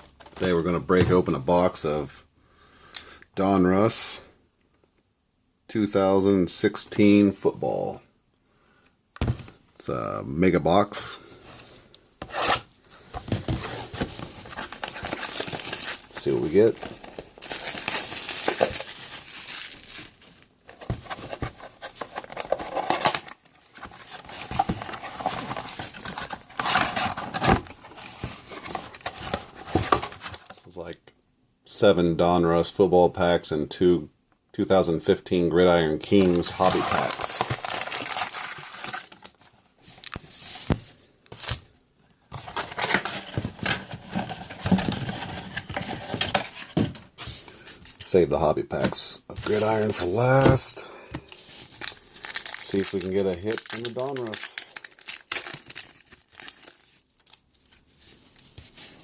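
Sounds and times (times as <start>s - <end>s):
plastic wrapping and foil crinkling: 13.0s - 30.6s, 36.3s - 40.2s, 49.3s - 59.0s.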